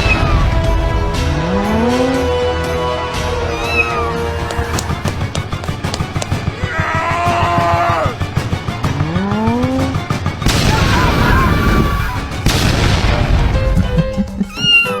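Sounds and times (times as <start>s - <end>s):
loud blasts: 10.5s - 14.2s.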